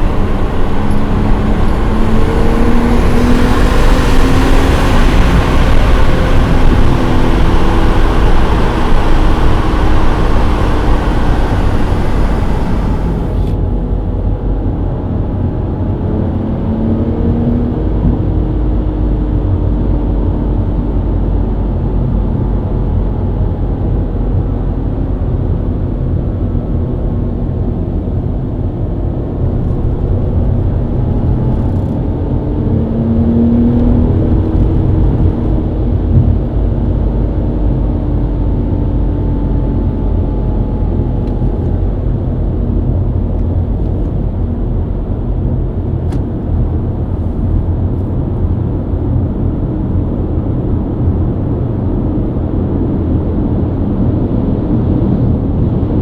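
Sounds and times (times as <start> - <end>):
tyre and road rumble: 0.0 - 14.3
car engine at highway speed: 0.0 - 56.0.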